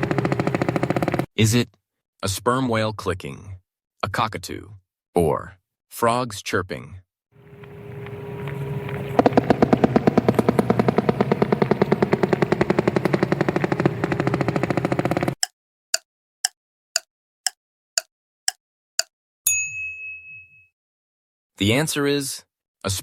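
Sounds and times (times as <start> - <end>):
low hum: 7.4 - 15.4
whale clicking: 7.4 - 15.5
short chime: 19.5 - 20.7.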